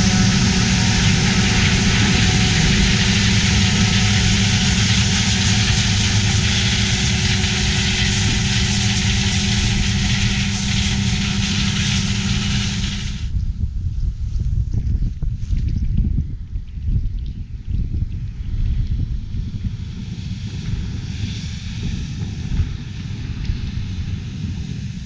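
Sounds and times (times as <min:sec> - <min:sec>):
loud mechanical hiss: 0:00.0 - 0:13.3
diesel engine drone: 0:00.0 - 0:13.4, 0:19.3 - 0:25.0
gusty wind: 0:00.0 - 0:25.0.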